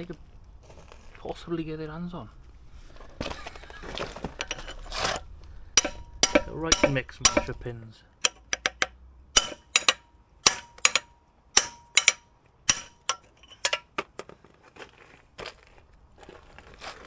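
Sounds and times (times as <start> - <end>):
metal-on-metal clinks: 4.4 - 5.2, 5.8 - 7.7, 8.3 - 13.9.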